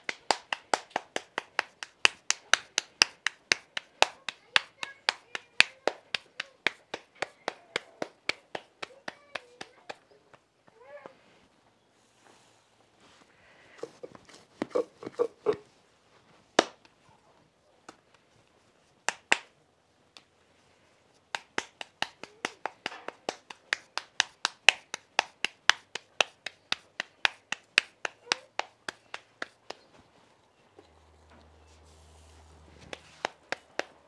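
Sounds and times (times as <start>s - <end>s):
hands slapping dough: 0.0s - 10.4s, 13.8s - 15.6s, 16.6s - 17.0s, 18.9s - 19.6s, 21.2s - 29.9s, 32.8s - 34.0s.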